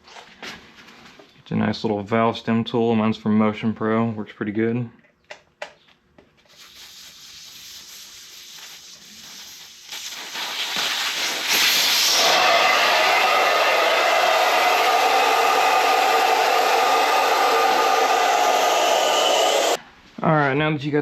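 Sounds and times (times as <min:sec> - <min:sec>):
air hissing out of a tire valve: 0:06.5 - 0:12.9.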